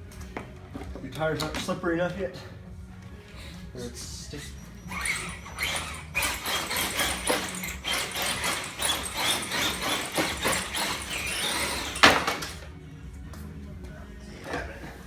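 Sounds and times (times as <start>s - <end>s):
electric motors straining: 4.2s - 12.7s
tyres scrabbling and slipping: 4.9s - 12.7s.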